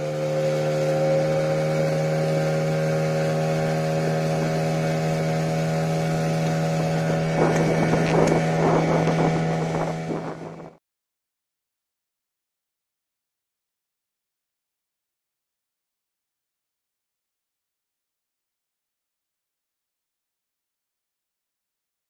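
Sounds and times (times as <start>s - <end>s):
boat motor humming: 0.0s - 10.8s
wind buffeting microphone: 4.0s - 10.8s.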